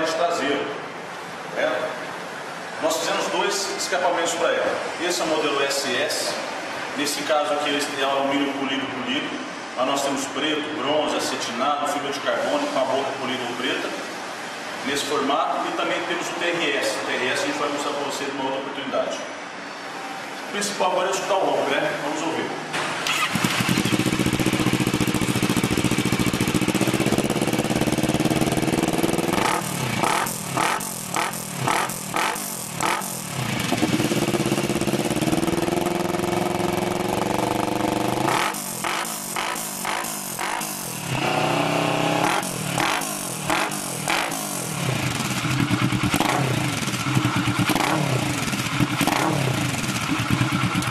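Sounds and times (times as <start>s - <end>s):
motorcycle engine idling and revving: 23.1s - 50.9s.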